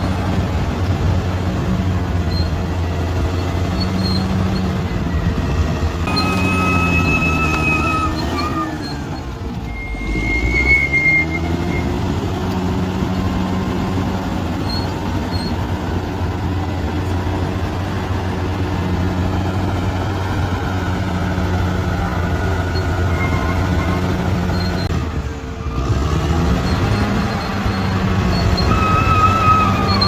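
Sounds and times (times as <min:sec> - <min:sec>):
bulldozer diesel engine running: 0:00.0 - 0:30.0
high squeaks: 0:01.4 - 0:16.1, 0:20.8 - 0:24.9, 0:26.5 - 0:30.0.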